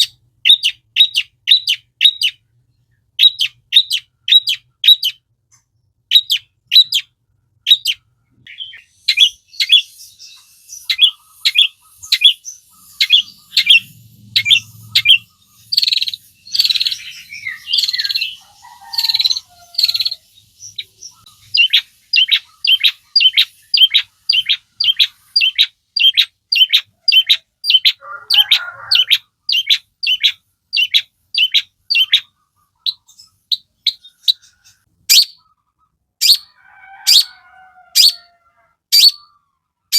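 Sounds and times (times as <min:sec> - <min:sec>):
bird singing sharp high notes: 0:08.5 - 0:34.4
bird scratchy chattering: 0:08.6 - 0:35.6.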